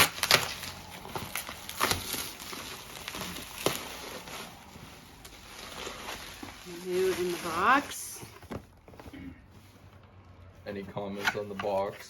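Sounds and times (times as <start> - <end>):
paper wrapping rustling: 0.0 - 10.0.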